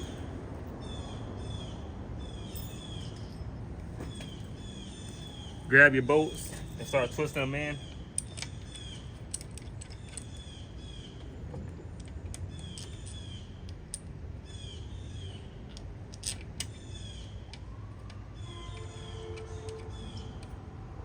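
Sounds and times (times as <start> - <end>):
bird chirping: 4.0 - 9.2, 18.4 - 20.4
metallic clicks of bolts: 7.9 - 10.5, 12.0 - 14.2, 15.7 - 16.8.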